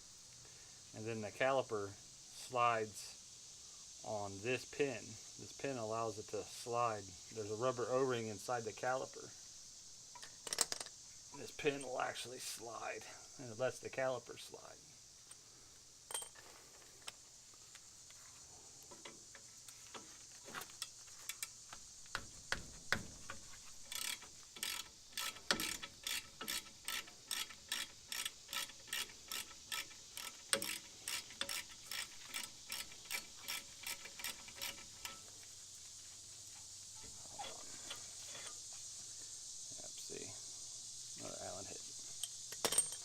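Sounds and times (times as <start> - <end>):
ratchet wrench clicking: 23.8 - 35.2.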